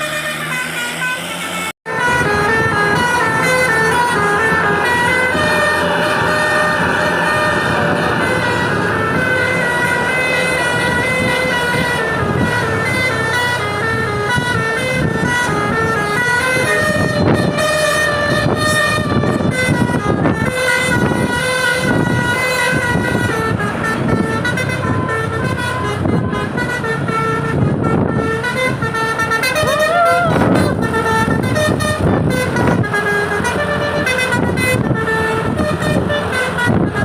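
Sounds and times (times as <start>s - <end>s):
bus air horn playing a melody: 0.0s - 37.0s.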